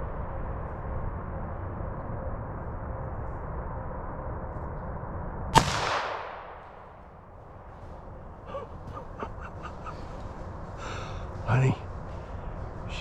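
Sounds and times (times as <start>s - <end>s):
rifle shot echoing: 5.5s - 7.6s.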